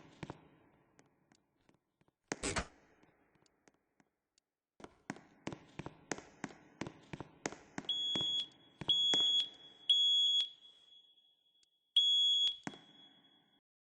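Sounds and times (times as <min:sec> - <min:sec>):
smoke alarm beeping: 0:07.9 - 0:13.6.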